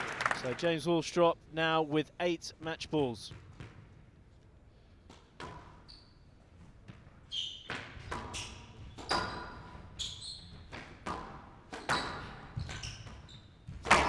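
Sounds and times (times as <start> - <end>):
squash ball smacking rackets and walls: 5.0 - 14.0
shoes squeaking on court floor: 5.1 - 14.0.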